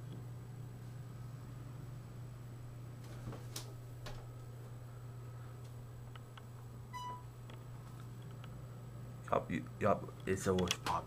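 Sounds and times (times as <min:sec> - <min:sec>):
short electronic beep: 0:06.9 - 0:07.3.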